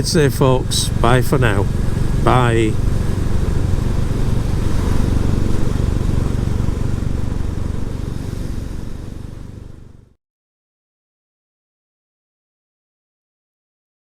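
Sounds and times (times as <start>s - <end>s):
motorcycle engine running: 0.0s - 10.1s
wind rush: 1.6s - 9.8s.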